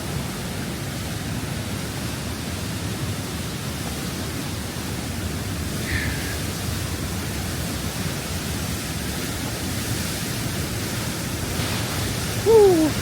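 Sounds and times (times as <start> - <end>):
rushing stream water: 0.0 - 13.0.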